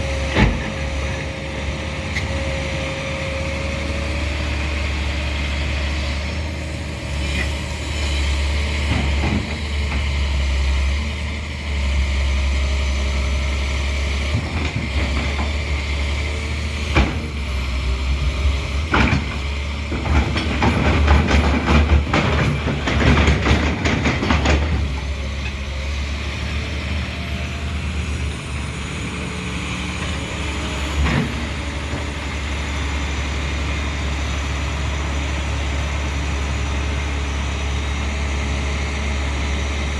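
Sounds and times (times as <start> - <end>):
excavator diesel engine running: 0.0 - 39.9
clanking and scraping: 16.9 - 25.6.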